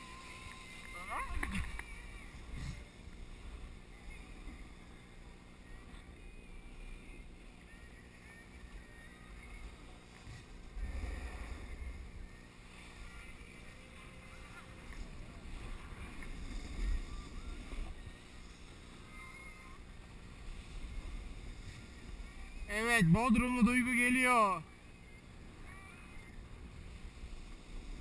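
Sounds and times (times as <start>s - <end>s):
wind rumble on microphone: 9.5s - 22.7s.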